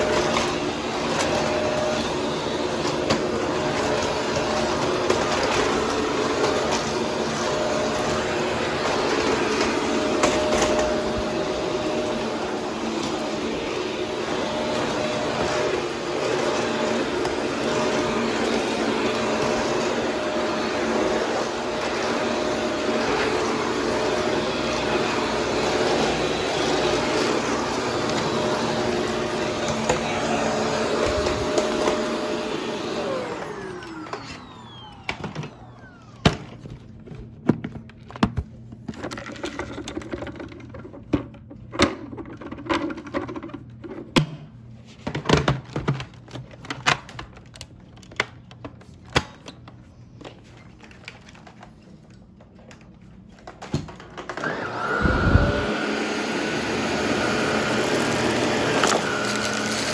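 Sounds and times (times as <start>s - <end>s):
vacuum cleaner running: 0.0s - 37.3s, 53.5s - 59.9s
motor winding down whine: 54.6s - 55.8s.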